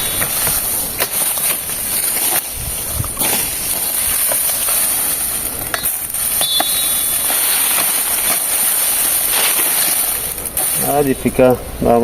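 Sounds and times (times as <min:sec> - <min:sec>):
dry palm fronds rustling: 0:00.0 - 0:12.0
steady high hiss: 0:00.0 - 0:12.0.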